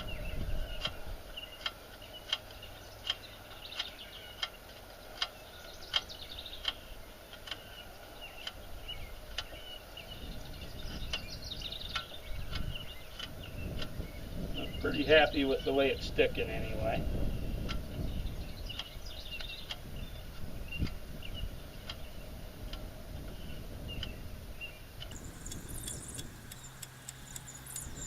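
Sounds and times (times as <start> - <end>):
birds calling: 0.0 - 17.0, 25.1 - 28.0
sharp tick-like chirp: 25.1 - 28.0.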